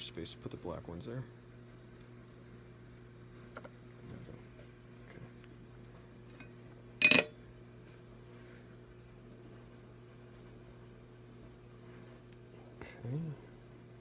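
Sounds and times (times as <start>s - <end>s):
low steady hum: 0.0s - 14.0s
metal tool clinking on hard surface: 7.0s - 7.4s.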